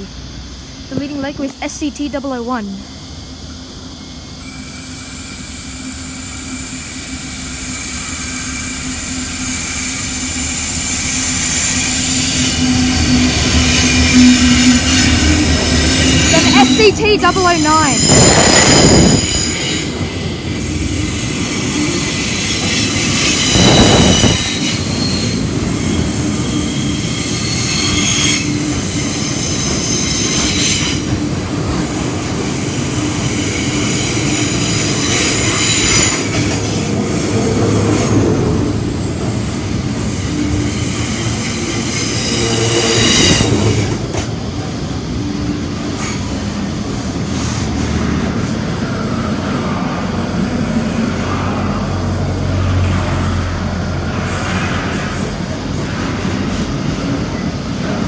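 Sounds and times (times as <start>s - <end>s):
train wagons rumbling and clattering: 0.0s - 58.0s
high-pitched wheel squeal: 4.4s - 17.0s, 20.7s - 31.1s, 38.7s - 43.9s.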